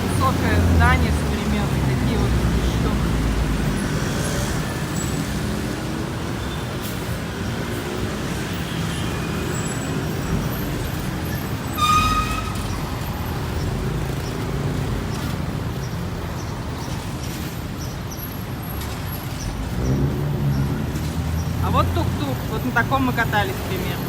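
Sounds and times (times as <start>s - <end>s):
passing vehicle engines: 0.0s - 24.0s
vehicle horn toot: 11.7s - 12.9s.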